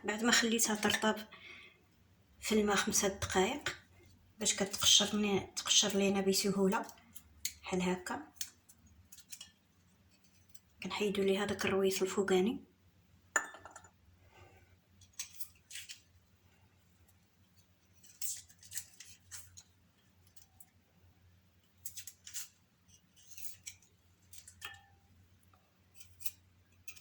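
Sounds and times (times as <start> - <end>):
knife snipping and scraping garlic: 8.3 - 10.7, 15.0 - 16.1, 18.0 - 20.7, 21.7 - 24.9, 25.8 - 27.0.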